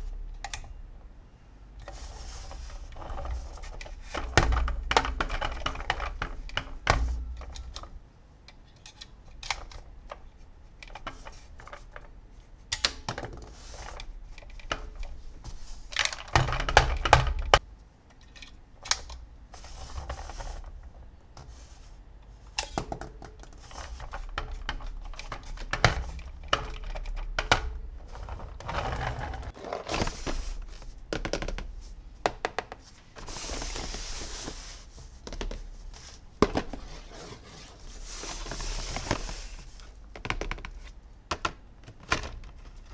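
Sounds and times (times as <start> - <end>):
plastic toys clattering: 1.8 - 8.0, 22.6 - 42.9.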